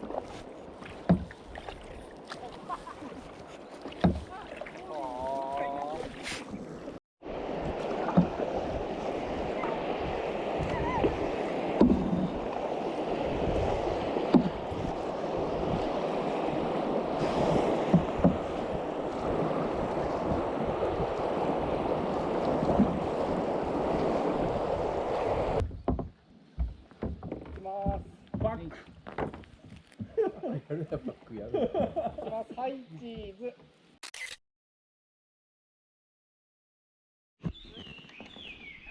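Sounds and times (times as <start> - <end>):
river water rushing around kayak: 0.0 - 26.0.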